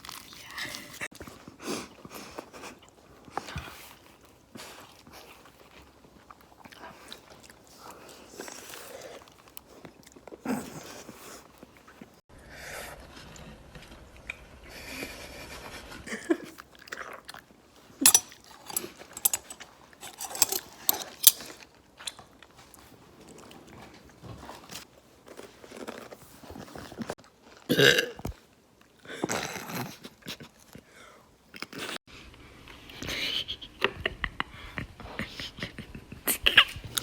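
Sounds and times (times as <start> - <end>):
crunching and chewing: 0.0 - 12.2, 24.6 - 30.8.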